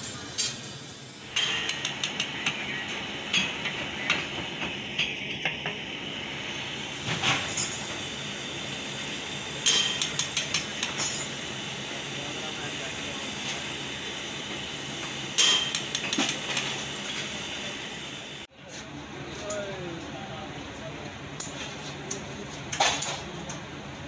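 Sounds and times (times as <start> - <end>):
steady background noise: 0.0 - 24.0
tools clicking and clinking: 9.6 - 11.4, 15.4 - 16.8.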